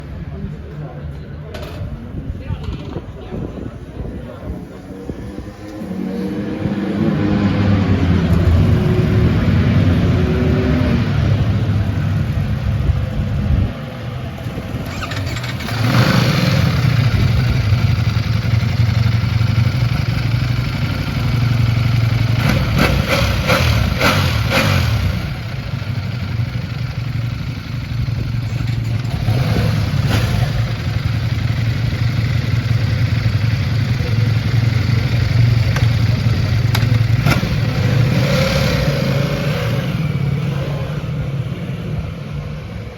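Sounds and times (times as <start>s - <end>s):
motorcycle engine idling: 11.6s - 38.1s
motorcycle throttle blips: 14.7s - 38.0s.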